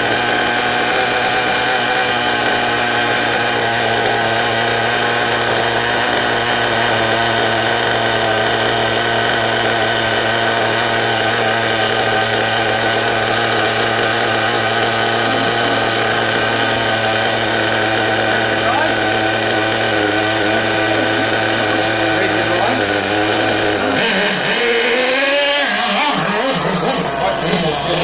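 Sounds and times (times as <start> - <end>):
remote-control car nitro engine running: 0.0 - 28.0.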